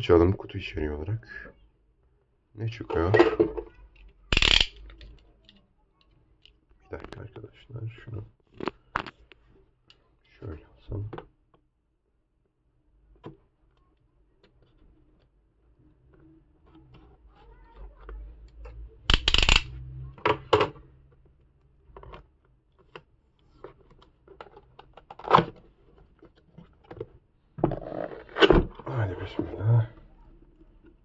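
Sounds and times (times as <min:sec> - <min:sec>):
cardboard scraping: 0:27.7 - 0:28.8.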